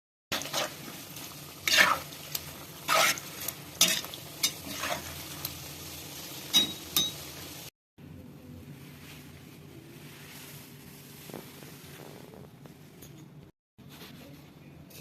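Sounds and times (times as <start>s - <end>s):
metal spoon scraping a pot: 2.9s - 5.2s.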